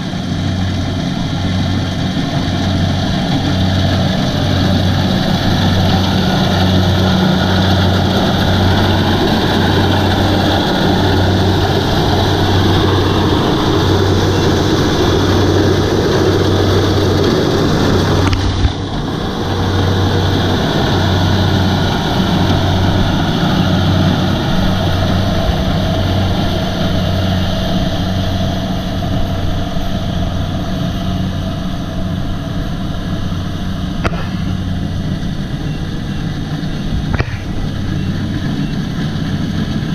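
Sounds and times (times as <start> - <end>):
diesel engine throbbing: 0.0 - 39.9.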